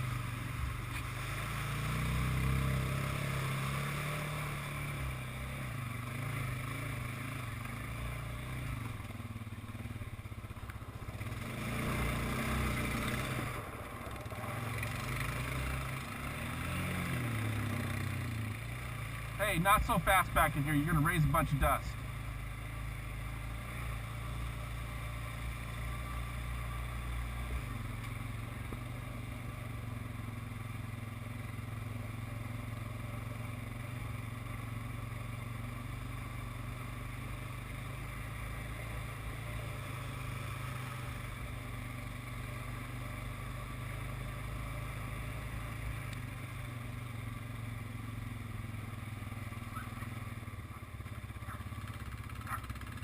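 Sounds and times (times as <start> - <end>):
atv engine running: 0.0 - 53.0.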